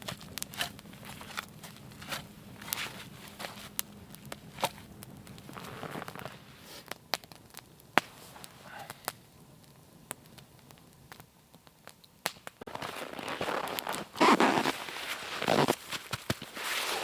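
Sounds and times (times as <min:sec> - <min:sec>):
rustling noise: 0:00.0 - 0:06.9, 0:12.6 - 0:17.0
wood fire crackling: 0:00.0 - 0:17.0.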